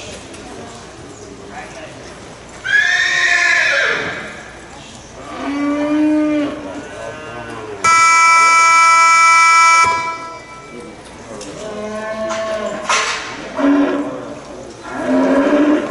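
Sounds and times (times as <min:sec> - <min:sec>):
loud horn-like tone: 0:07.8 - 0:10.6.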